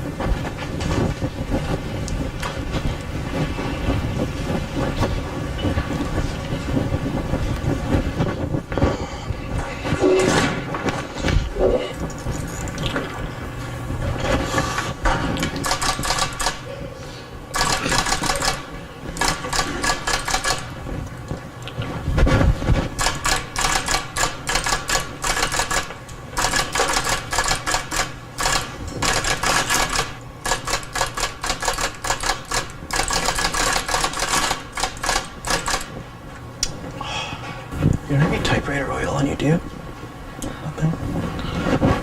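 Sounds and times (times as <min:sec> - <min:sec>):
typewriter keys clacking: 0:15.4 - 0:16.6, 0:17.6 - 0:18.6, 0:19.2 - 0:20.7, 0:23.0 - 0:35.9.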